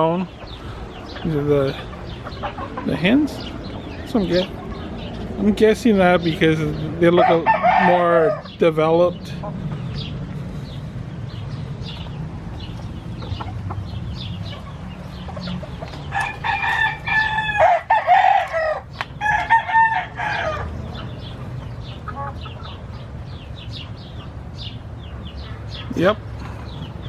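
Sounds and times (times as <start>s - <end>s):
chickens clucking and peeping: 0.0s - 27.0s
rooster crowing: 7.2s - 8.5s, 16.1s - 20.8s
steady low hum: 8.3s - 17.7s.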